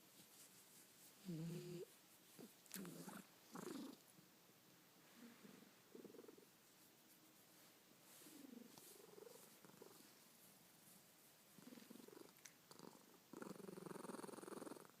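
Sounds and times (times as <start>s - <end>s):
soft snoring: 1.2s - 1.9s, 11.6s - 15.0s.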